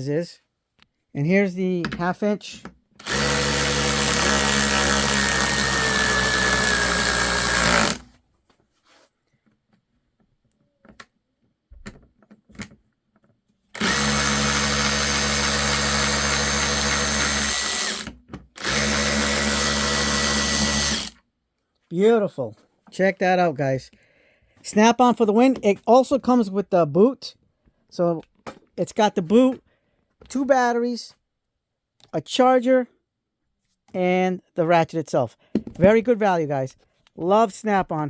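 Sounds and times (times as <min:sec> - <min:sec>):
cordless ratchet motor whine: 0:03.0 - 0:08.0, 0:13.8 - 0:21.2.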